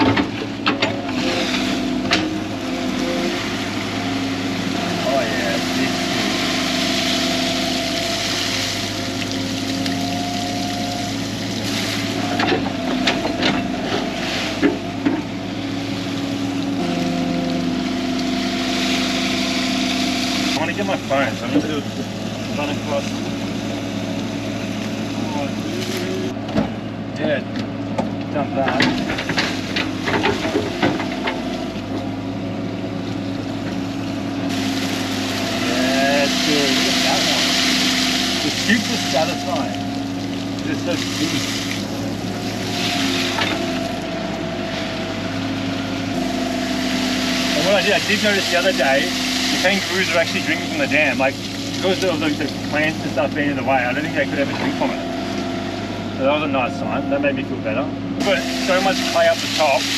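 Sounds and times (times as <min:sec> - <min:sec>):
excavator diesel engine running: 0:00.0 - 0:59.9
splashes: 0:02.6 - 0:23.5, 0:34.5 - 0:55.7, 0:58.2 - 0:59.9.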